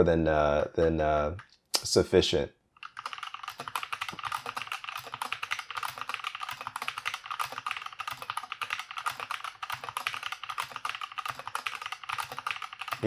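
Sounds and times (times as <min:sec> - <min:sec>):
mechanical keyboard typing: 0:02.8 - 0:13.0.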